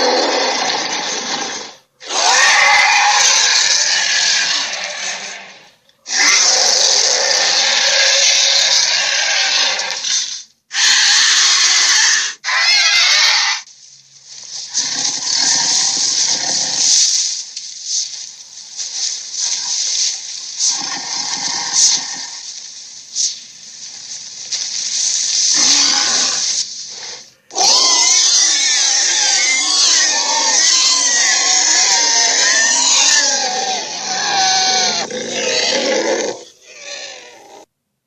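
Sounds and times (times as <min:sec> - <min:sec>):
loud long creature roar: 0:00.0 - 0:05.5, 0:27.6 - 0:37.7
creature growls: 0:00.0 - 0:10.0, 0:28.4 - 0:37.7.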